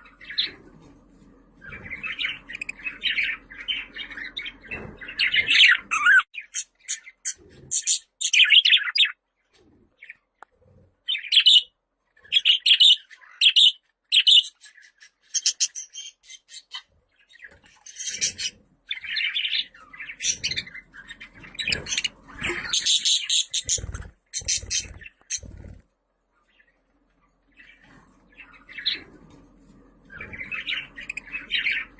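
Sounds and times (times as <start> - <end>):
budgerigar chirping and chattering: 1.7 - 9.2, 12.3 - 16.9, 17.7 - 25.6.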